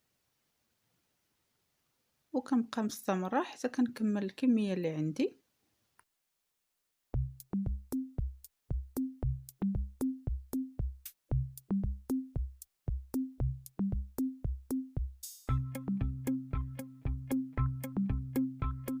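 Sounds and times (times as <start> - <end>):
electronic music with drum-machine beat: 7.2 - 19.0.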